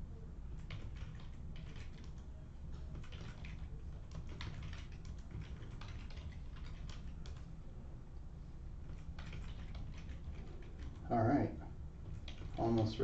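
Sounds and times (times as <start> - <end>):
typing on keyboard: 0.5 - 7.5, 8.8 - 11.1, 12.0 - 13.0.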